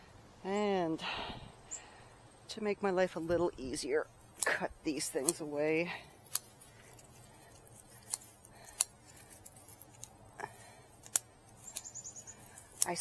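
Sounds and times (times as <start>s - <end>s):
shears snipping stems: 3.7s - 13.0s.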